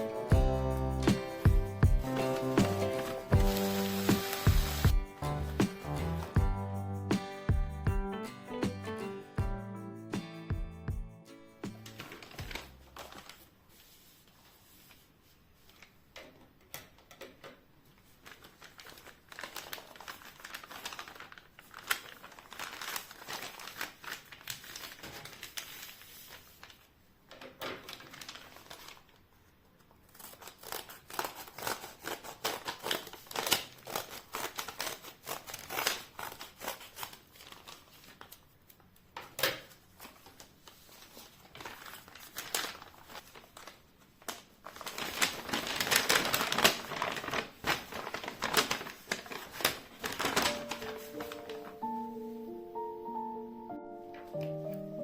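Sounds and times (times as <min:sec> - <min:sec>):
crinkling and rustling of craft materials: 0:02.0 - 0:04.9, 0:11.7 - 0:52.5.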